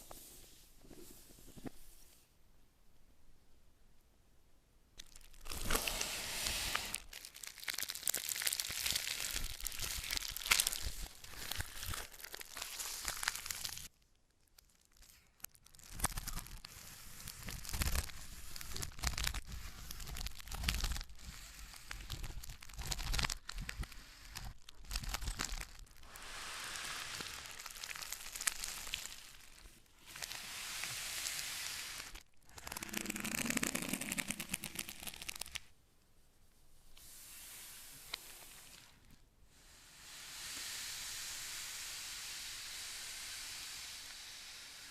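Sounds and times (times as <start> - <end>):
packaging crinkling and tearing: 5.0 - 26.1, 27.0 - 30.5, 32.0 - 35.7.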